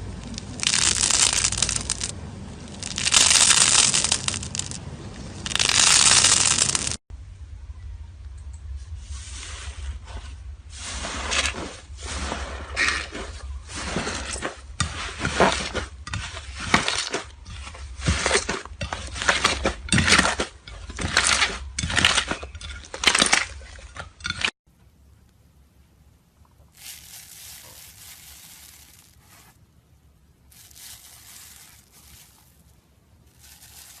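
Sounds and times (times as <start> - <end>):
slime squishing by hand: 30.5 - 34.0.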